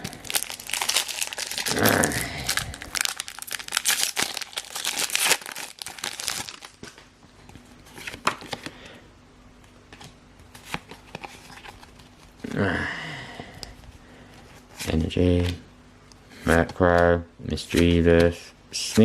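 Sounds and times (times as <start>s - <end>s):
foil wrapper tearing and crinkling: 0.0s - 7.0s.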